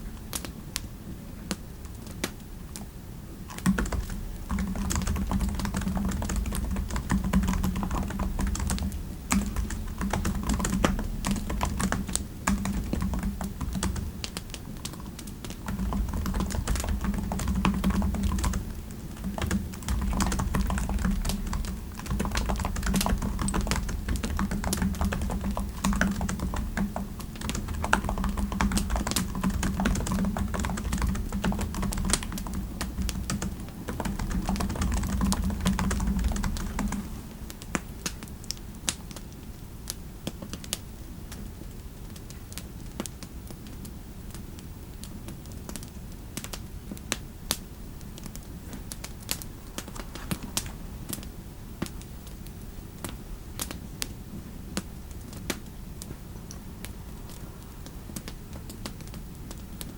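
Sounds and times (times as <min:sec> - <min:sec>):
typing on computer keyboard: 0:03.5 - 0:38.6, 0:49.3 - 0:51.2.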